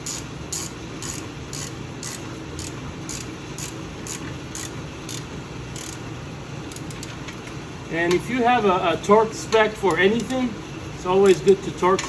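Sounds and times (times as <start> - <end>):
hand ratchet clicking: 0.0 - 6.0, 6.7 - 7.1, 9.9 - 10.4.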